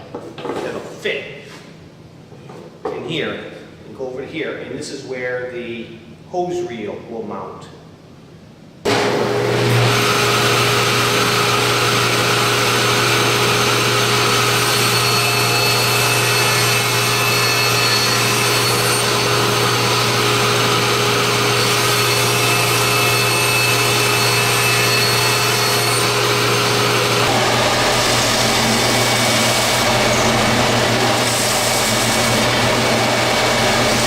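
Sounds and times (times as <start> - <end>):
power saw cutting plywood: 8.9 - 34.0.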